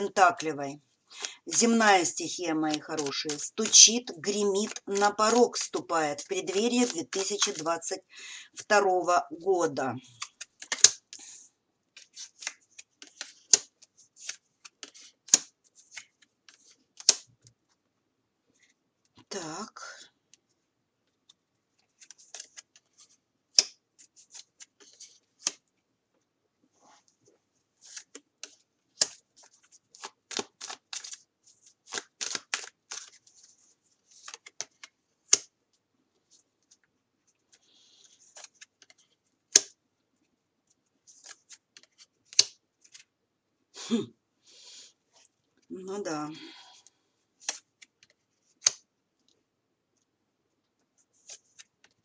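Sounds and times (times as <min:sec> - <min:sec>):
cards clicking and sliding: 0:02.7 - 0:07.7, 0:10.1 - 0:11.3, 0:12.0 - 0:17.3, 0:22.0 - 0:25.6, 0:27.8 - 0:35.5, 0:37.5 - 0:39.8, 0:41.1 - 0:43.1, 0:47.4 - 0:48.8, 0:51.2 - 0:52.0.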